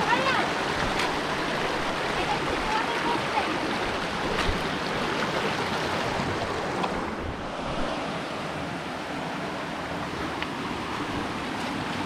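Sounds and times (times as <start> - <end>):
river water rushing over rocks: 0.0 - 12.0.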